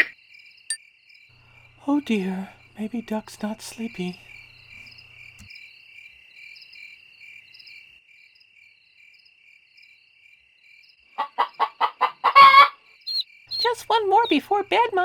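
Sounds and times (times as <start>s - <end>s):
crickets chirping: 0.1s - 11.6s, 12.4s - 15.0s
chicken clucking: 11.2s - 13.2s.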